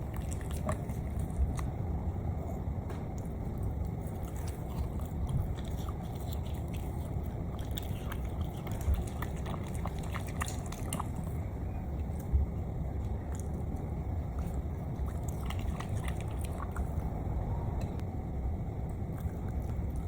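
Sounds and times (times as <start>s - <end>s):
dog chewing and smacking: 0.0s - 1.8s, 3.1s - 18.0s, 18.9s - 20.0s
steady low rumble: 0.0s - 20.0s.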